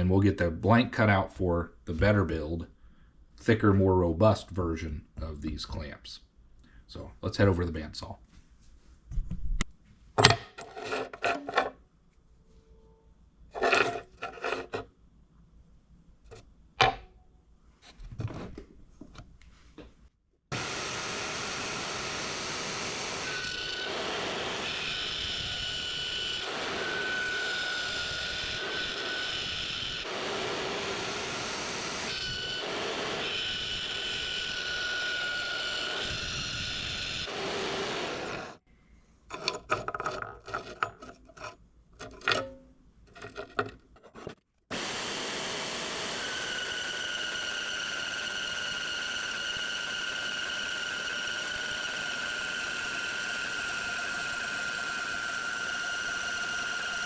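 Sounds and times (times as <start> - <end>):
bandsaw cutting metal: 13.6 - 14.8, 20.5 - 38.6, 44.7 - 57.0
tools clicking and knocking: 39.3 - 44.4.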